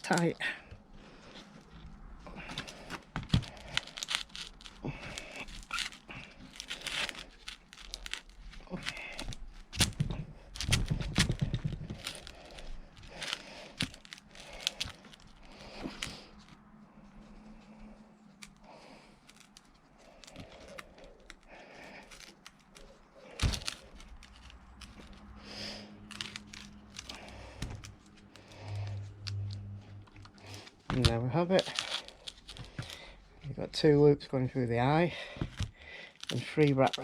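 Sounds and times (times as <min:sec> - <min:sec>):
rope rustling and creaking: 0:00.0 - 0:37.0.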